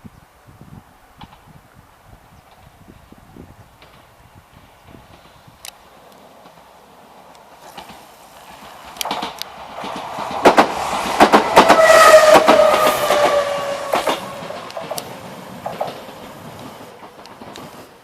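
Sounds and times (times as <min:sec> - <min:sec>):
electric train whine: 0:00.8 - 0:18.0
train wheels knocking on rail joints: 0:06.4 - 0:18.0.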